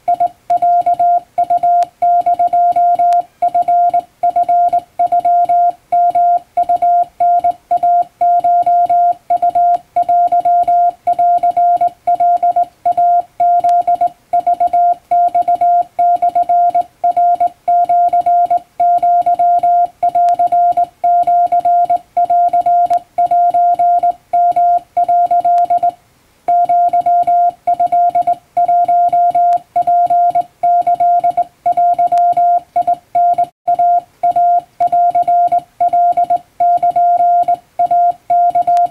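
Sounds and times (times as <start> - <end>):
morse code beeps: 0.0 - 38.9.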